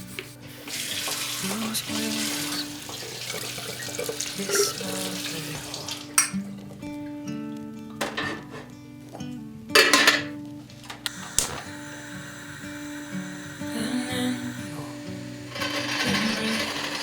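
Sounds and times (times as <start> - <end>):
tap water running into sink: 0.6 - 6.3.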